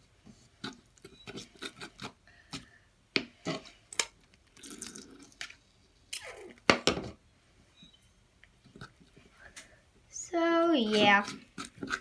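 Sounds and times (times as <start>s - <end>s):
slime stirred with plastic spoon: 0.0s - 6.0s, 10.2s - 12.0s.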